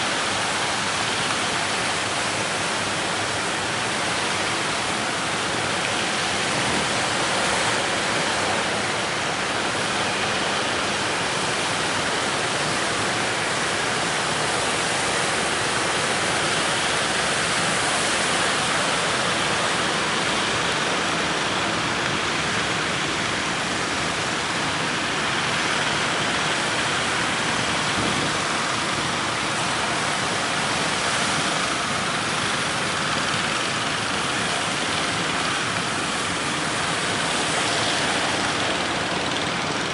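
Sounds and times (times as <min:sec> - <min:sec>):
wind roaring: 0:12.5 - 0:39.9.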